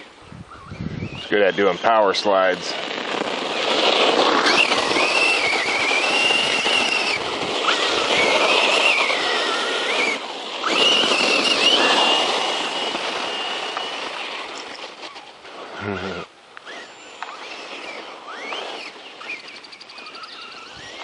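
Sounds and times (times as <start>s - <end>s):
rc truck motor whine: 0.5s - 21.0s
tyres rushing over ground: 1.3s - 21.0s.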